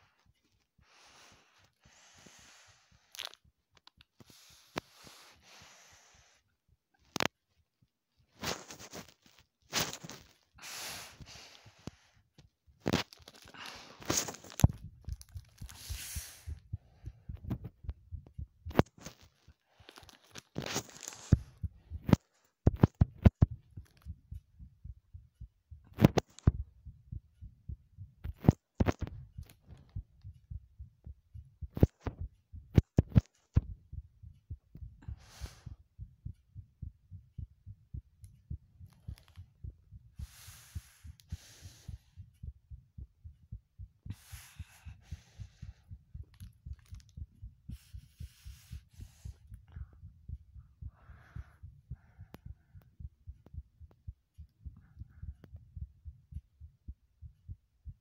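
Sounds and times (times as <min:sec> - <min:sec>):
heartbeat thumps: 0:12.7 - 0:58.0.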